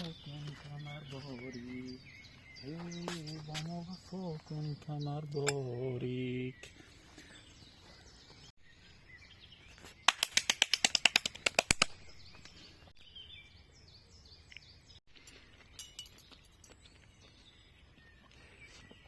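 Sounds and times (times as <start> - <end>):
faint high bird chirps: 0.0 - 10.1
fast rattling bird call: 10.1 - 11.9.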